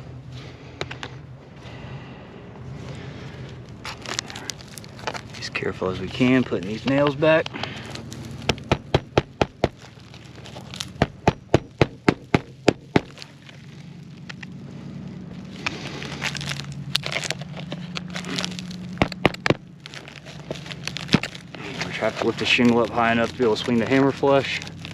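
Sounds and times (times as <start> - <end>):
hammer driving nails into shingle: 8.4 - 9.8, 11.0 - 13.1.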